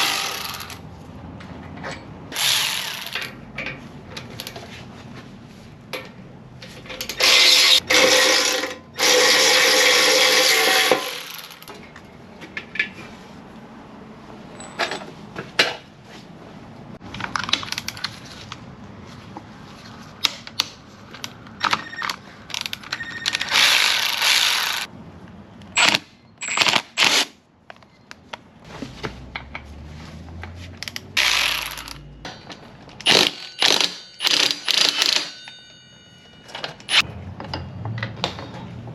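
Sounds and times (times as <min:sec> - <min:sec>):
metal tools clicking and clinking: 0:30.8 - 0:38.7.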